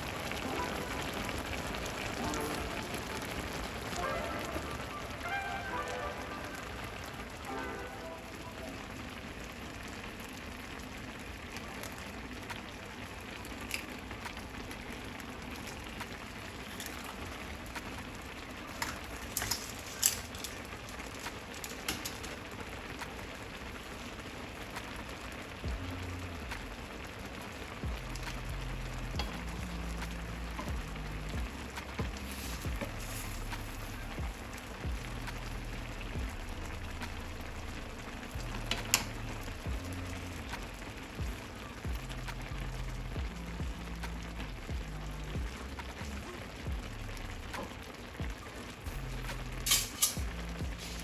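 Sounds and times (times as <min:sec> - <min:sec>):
boiling water hissing: 0:00.0 - 0:51.0
food sizzling in a pan: 0:00.0 - 0:51.0
music with stepping bass line: 0:25.6 - 0:26.8, 0:27.8 - 0:47.6, 0:48.2 - 0:51.0.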